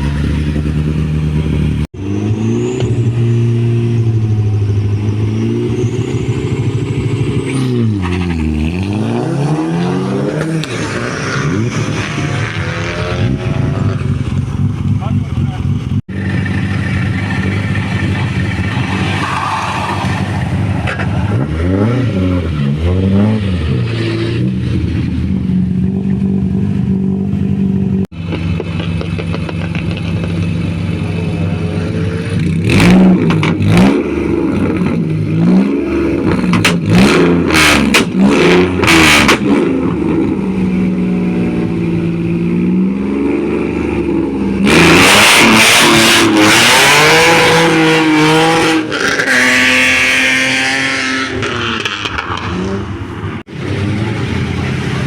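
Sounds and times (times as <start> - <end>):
rally car engines revving: 0.0 - 55.0
car launching with tyre noise: 16.2 - 25.2.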